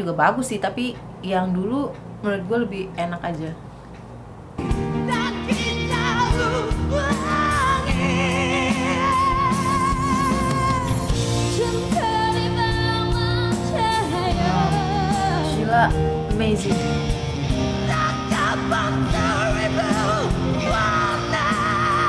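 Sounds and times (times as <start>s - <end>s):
band with guitar: 4.7s - 22.0s
person singing with vibrato: 4.9s - 22.0s.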